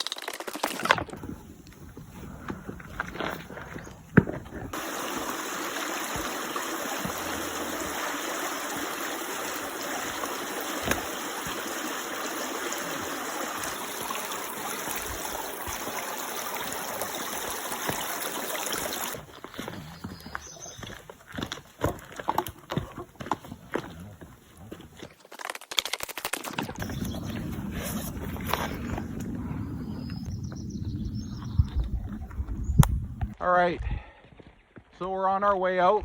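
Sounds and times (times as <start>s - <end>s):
running water rushing: 4.7s - 19.2s, 26.8s - 30.3s.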